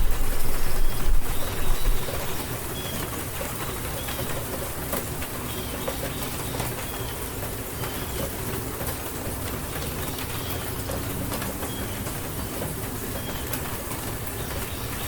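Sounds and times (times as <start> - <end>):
raindrop ticks: 0.0 - 15.0
steady rainfall hiss: 0.0 - 15.0.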